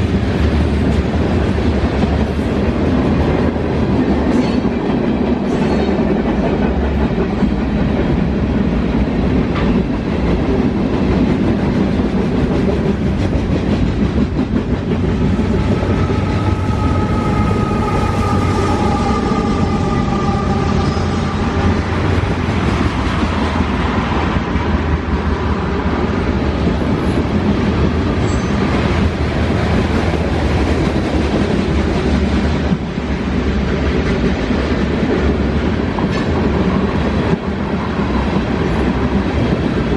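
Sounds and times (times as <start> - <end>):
freight train wheels clacking: 0.0 - 39.9
high squeal tones: 15.6 - 22.2.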